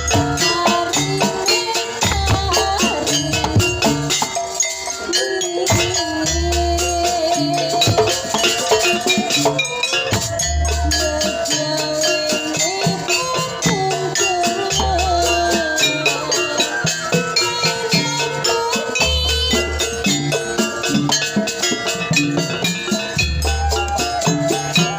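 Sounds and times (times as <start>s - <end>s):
fast steady percussion: 0.0s - 24.9s
wavering melody line: 0.0s - 24.9s.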